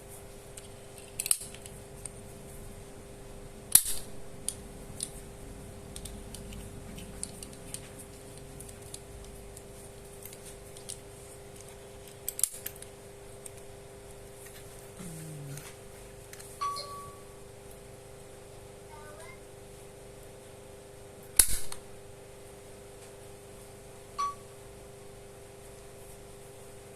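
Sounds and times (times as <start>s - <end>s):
injector pen firing snaps: 21.4s - 21.8s.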